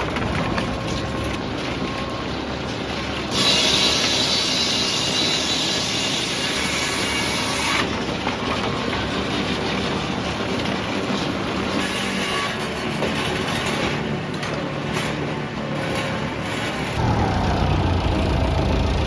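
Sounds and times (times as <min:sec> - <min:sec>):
wood-cutting machine running: 0:00.0 - 0:19.0
wood cutting noise: 0:03.3 - 0:19.0.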